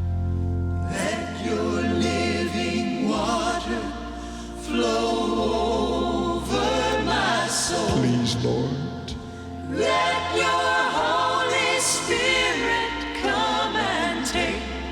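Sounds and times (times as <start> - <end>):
gospel choir singing: 0.8 - 14.9.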